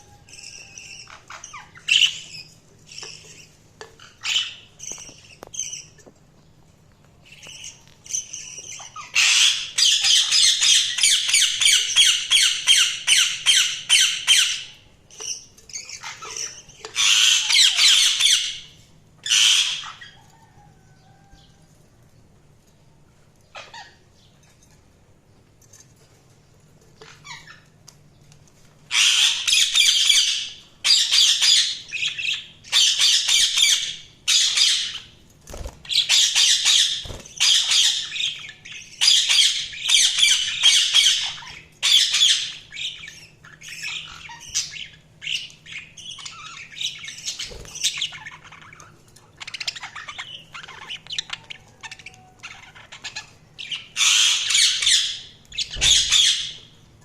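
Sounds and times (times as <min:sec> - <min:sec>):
budgerigars chattering: 0:08.2 - 0:20.2, 0:35.9 - 0:48.8, 0:49.4 - 0:56.7.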